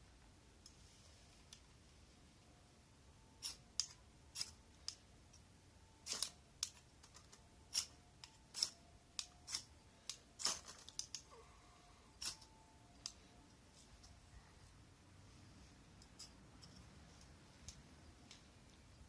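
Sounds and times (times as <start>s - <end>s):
sharp clicks and snaps: 6.1s - 11.3s.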